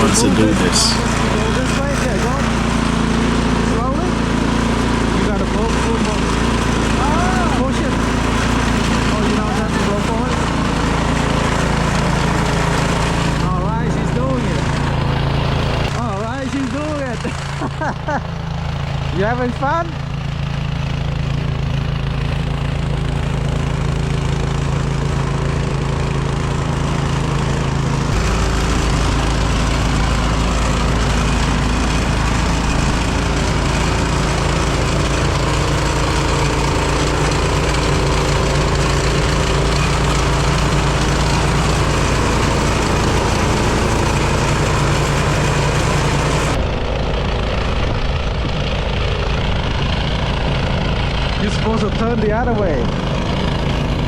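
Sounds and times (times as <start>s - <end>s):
snowblower engine running: 0.0s - 54.0s.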